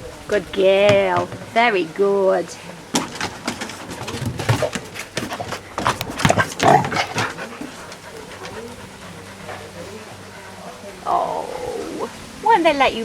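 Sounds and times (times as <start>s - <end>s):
dogs grunting and snorting: 0.0s - 12.8s
scuffling clicks: 3.0s - 8.8s.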